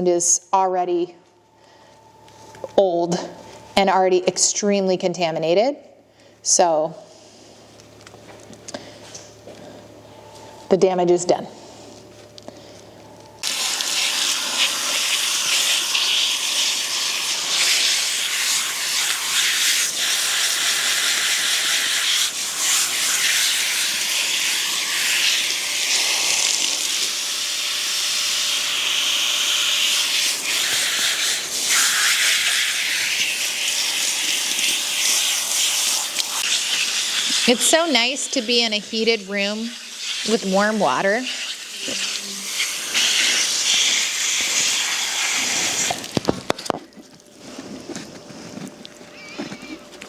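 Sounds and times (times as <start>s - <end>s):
hose spray hissing: 13.4s - 46.1s.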